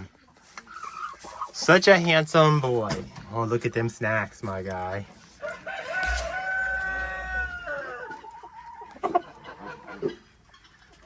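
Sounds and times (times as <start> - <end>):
rooster crowing: 5.4 - 8.2
short sharp rooster calls: 5.8 - 8.1.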